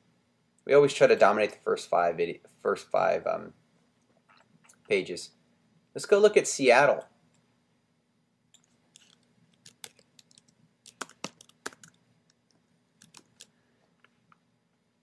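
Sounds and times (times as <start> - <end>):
computer keyboard typing: 8.5 - 12.0, 13.0 - 13.5.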